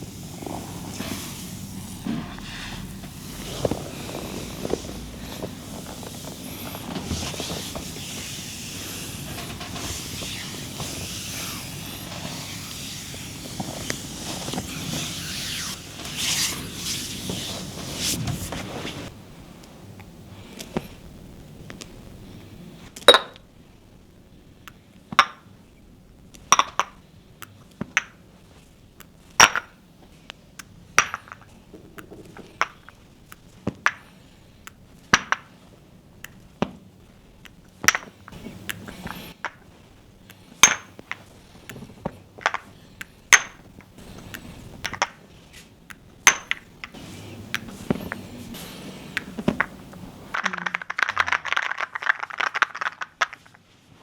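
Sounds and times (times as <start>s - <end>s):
metal cups clinking: 23.1s - 23.4s.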